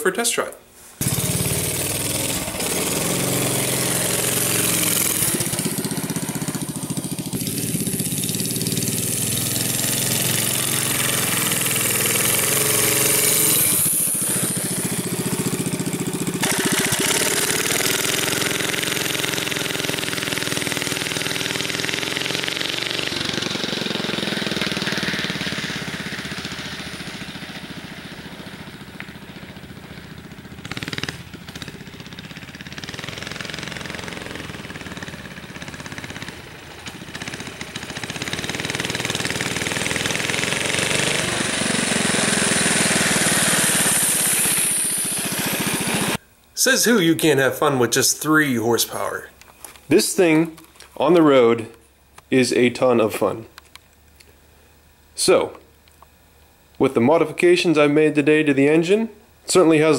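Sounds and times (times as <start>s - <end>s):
small engine revving: 1.0s - 46.2s.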